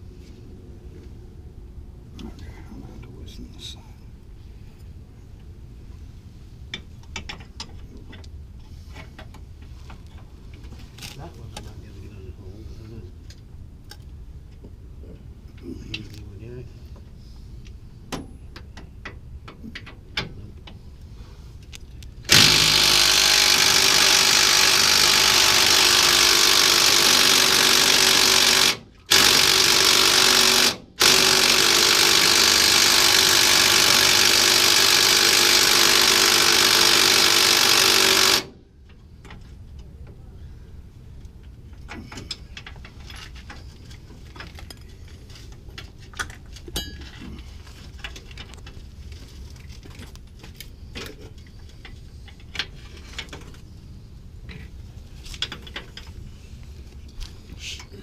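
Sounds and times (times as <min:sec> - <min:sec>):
power tool running: 0:22.3 - 0:38.6
hand tools clinking: 0:46.6 - 0:47.5.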